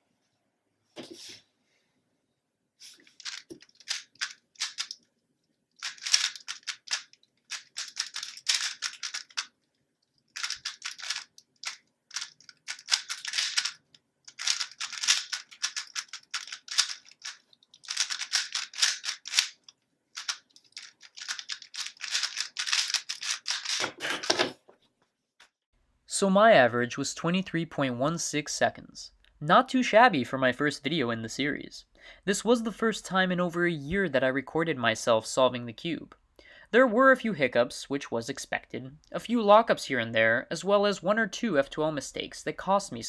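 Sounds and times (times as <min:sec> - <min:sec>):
plastic puzzle cube clacking: 0:03.0 - 0:05.1, 0:05.8 - 0:24.5.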